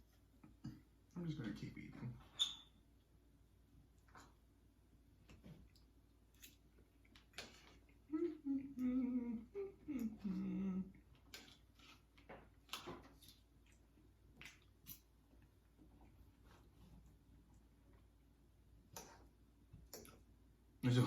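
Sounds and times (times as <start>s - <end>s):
woman humming: 8.0s - 11.1s
eating clicks and smacks: 18.9s - 20.3s.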